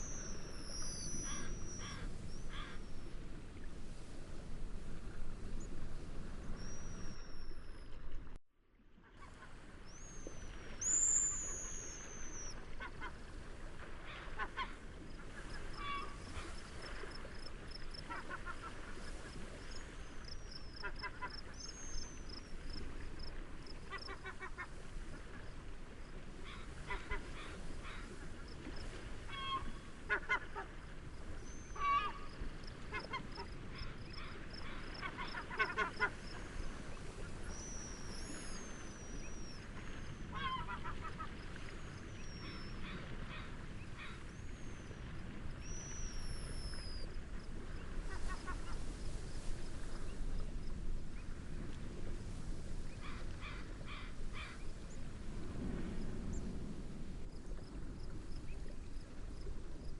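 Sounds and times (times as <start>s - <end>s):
gentle waves: 0.0s - 59.9s
wind: 0.0s - 59.9s
waterbirds honking: 0.7s - 2.9s, 14.0s - 17.0s, 20.2s - 22.4s, 26.4s - 28.4s, 29.2s - 30.9s, 31.5s - 37.6s, 39.0s - 44.6s.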